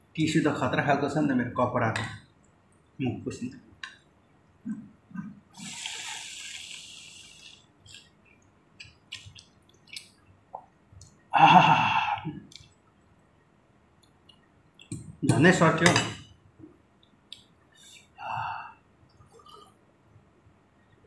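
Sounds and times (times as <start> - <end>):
person slurping soup: 5.6 - 7.7
chewing sounds: 6.6 - 11.2.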